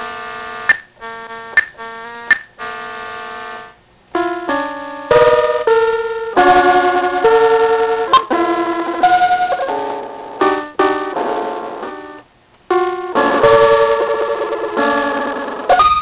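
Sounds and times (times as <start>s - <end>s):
glitchy electronic keyboard chords: 0.0s - 16.0s
sharp click: 0.7s - 0.9s, 1.6s - 2.5s.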